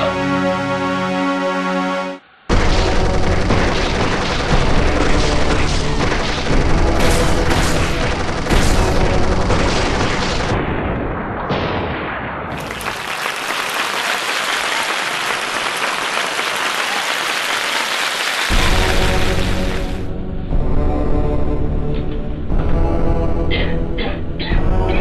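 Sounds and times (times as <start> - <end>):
gunshot-like cracks: 2.5 - 12.7
explosion booms: 8.6 - 13.0.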